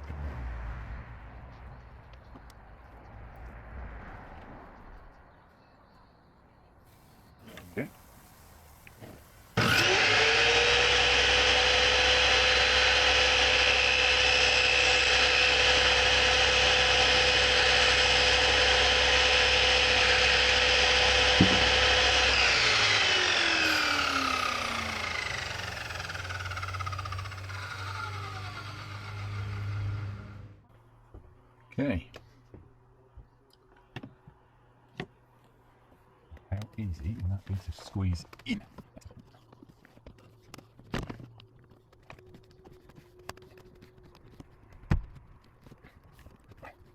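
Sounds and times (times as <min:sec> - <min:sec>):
electric power saw motor: 0:07.0 - 0:30.6.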